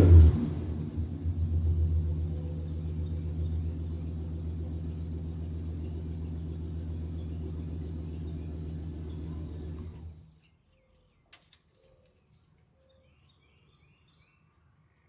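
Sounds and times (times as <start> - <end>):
truck engine running: 0.0 - 10.3.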